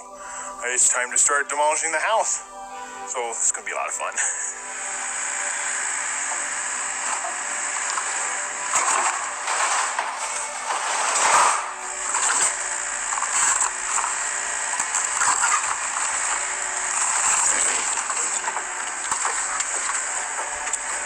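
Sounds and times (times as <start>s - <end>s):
building material crunching: 6.2s - 21.0s.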